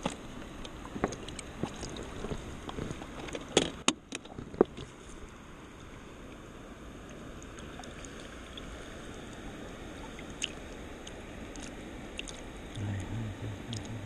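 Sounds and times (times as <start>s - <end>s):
river water flowing: 0.0s - 14.0s.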